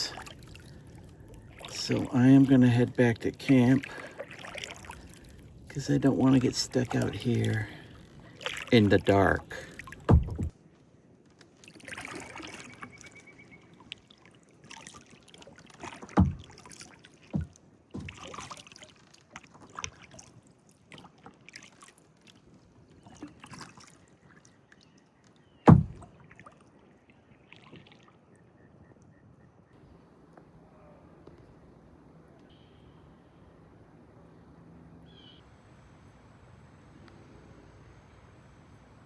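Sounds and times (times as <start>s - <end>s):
paddle splashing in water: 0.0s - 10.6s, 11.5s - 24.9s, 25.6s - 28.2s
paddle knocks: 9.9s - 10.5s, 16.0s - 16.7s, 17.3s - 18.5s, 25.7s - 26.1s.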